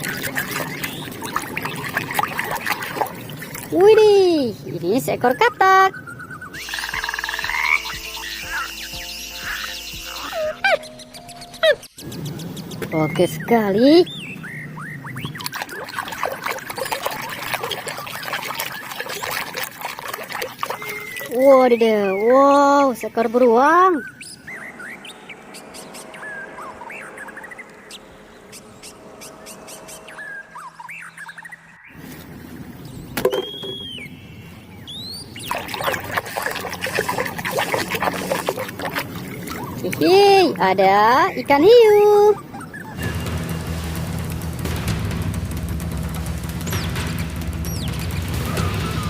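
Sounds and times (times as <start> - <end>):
water dripping: 0.0 - 5.5, 15.0 - 24.1, 35.4 - 41.9
water trickling and splashing: 0.0 - 10.6, 12.2 - 27.1, 31.9 - 43.4
rising chirp: 5.9 - 15.6, 23.8 - 35.6.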